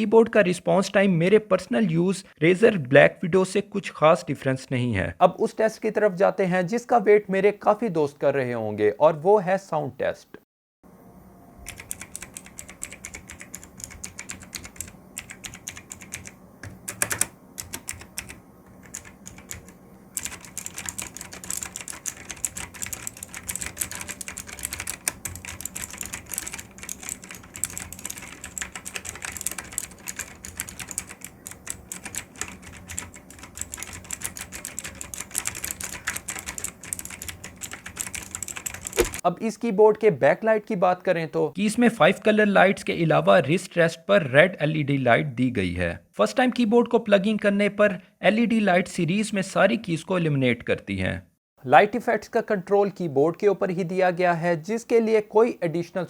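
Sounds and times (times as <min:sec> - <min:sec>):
clicky mechanical keyboard typing: 0:11.6 - 0:39.2.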